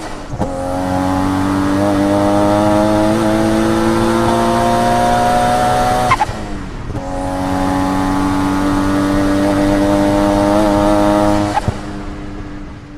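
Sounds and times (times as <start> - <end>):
car engine at high revs: 0.0 - 12.9.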